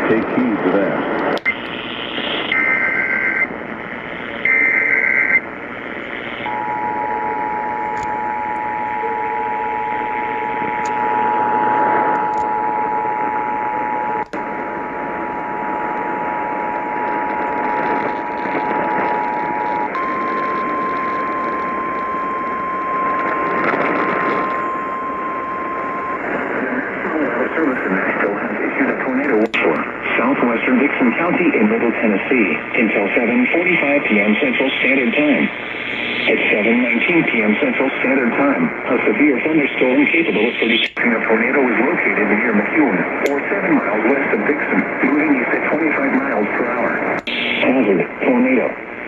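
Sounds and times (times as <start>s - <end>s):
radio static hiss: 0.0s - 49.0s
warbling data tones: 6.3s - 29.1s
steady warning alarm tone: 6.4s - 27.7s
two-tone attention signal: 18.8s - 26.2s.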